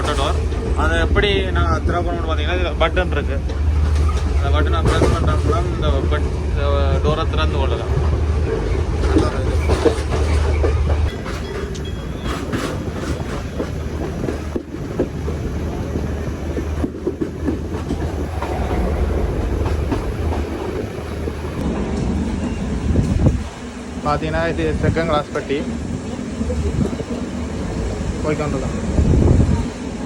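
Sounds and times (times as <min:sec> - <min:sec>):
wheels clattering over rail joints: 0:00.0 - 0:21.6
train running rumble: 0:00.0 - 0:30.0.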